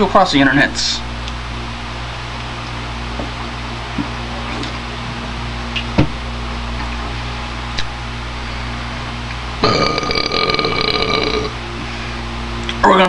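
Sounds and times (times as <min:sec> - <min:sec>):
room hum: 0:00.0 - 0:13.0
person belching: 0:09.6 - 0:11.6.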